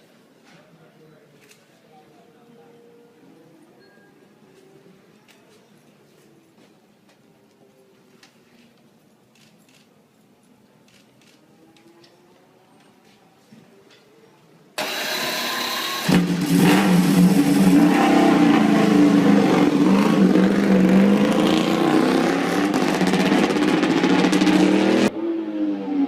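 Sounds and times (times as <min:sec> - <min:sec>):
racing motorcycle engine revving: 0:15.6 - 0:26.0.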